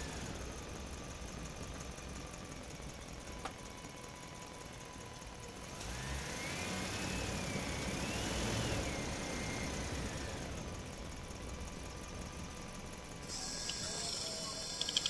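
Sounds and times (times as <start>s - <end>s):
steady whirring noise: 13.2s - 15.0s
small electric motor whining: 13.3s - 15.0s.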